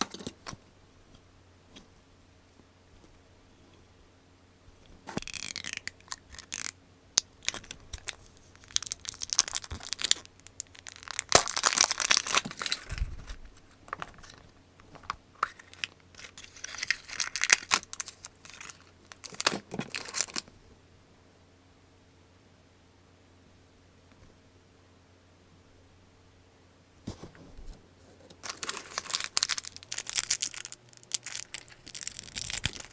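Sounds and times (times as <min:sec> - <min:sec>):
plastic wrapper crinkling and tearing: 0:05.1 - 0:06.8, 0:07.4 - 0:14.4, 0:15.0 - 0:20.5, 0:28.4 - 0:32.9.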